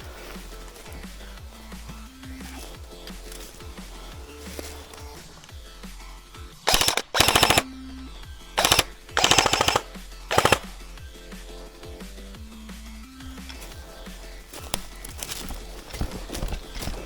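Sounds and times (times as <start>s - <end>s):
background music: 0.0s - 17.0s
airsoft rifle bursts: 6.7s - 7.7s, 8.6s - 10.9s.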